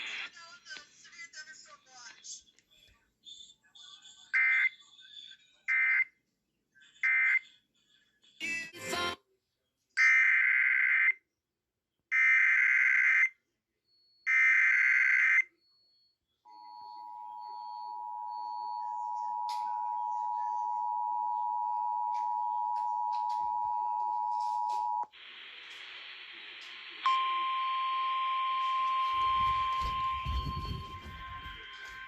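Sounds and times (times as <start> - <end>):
two-tone attention signal: 27.1 - 32.0.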